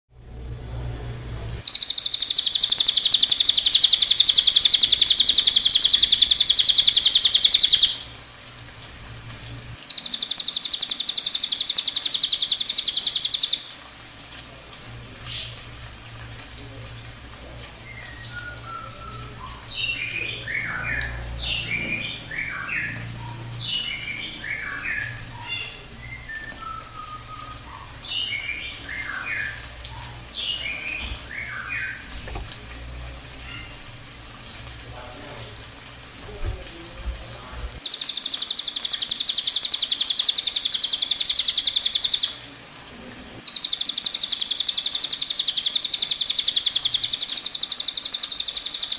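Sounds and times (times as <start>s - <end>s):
bird chirps and whistles: 1.6s - 8.1s, 9.8s - 13.6s, 17.8s - 29.6s
songbird fast high-pitched trills: 1.6s - 8.2s, 9.8s - 13.7s, 37.8s - 42.4s, 43.5s - 48.9s.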